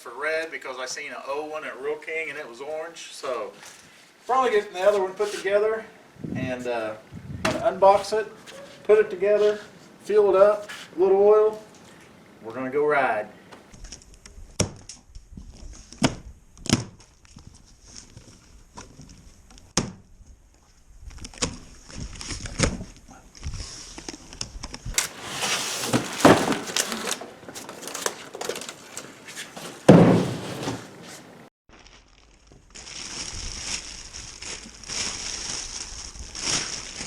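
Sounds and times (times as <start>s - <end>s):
heavy thump: 7.4s - 7.7s, 29.8s - 31.0s
packaging rustling and tearing: 25.0s - 37.0s.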